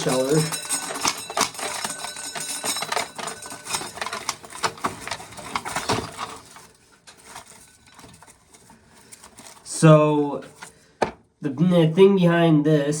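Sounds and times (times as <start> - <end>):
small clicks and rattles: 0.0 - 9.9.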